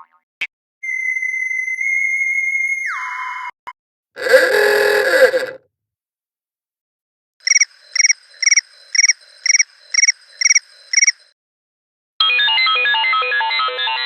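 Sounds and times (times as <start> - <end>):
trilled alarm chirps: 4.2 - 5.6.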